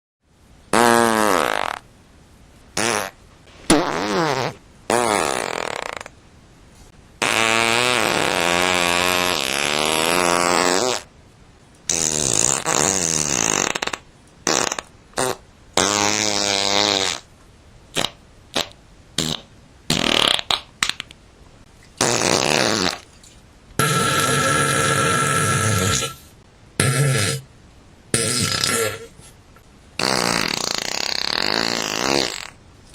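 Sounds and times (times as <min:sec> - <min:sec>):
fart sound effects: 0:00.7 - 0:01.9, 0:02.8 - 0:06.2, 0:07.2 - 0:11.1, 0:11.9 - 0:17.3, 0:17.9 - 0:20.7, 0:22.0 - 0:23.1, 0:23.8 - 0:27.5, 0:28.1 - 0:29.3, 0:30.0 - 0:32.6.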